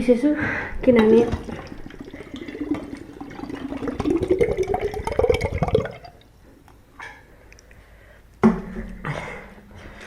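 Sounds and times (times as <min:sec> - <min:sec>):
liquid pouring and gurgling: 0:00.9 - 0:06.3.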